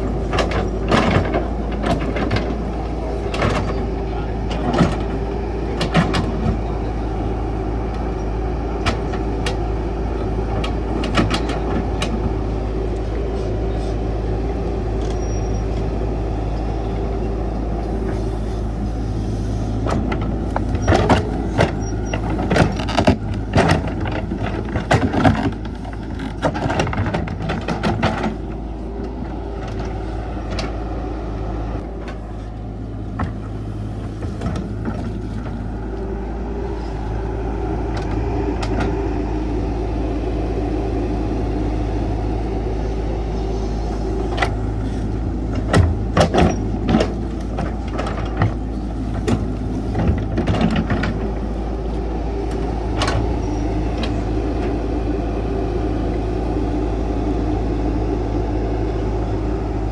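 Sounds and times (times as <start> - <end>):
metal clanks and knocks: 0.0 - 6.6, 19.8 - 30.8, 43.8 - 51.4
excavator diesel engine running: 0.0 - 59.9.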